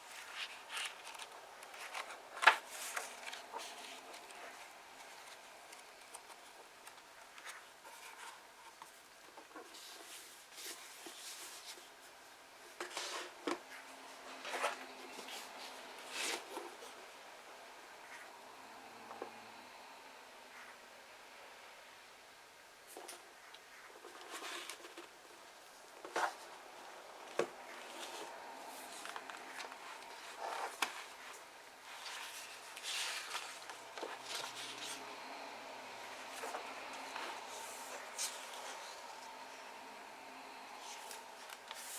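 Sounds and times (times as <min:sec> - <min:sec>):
book pages turning: 0:00.0 - 0:09.0, 0:12.8 - 0:17.0, 0:26.0 - 0:41.9.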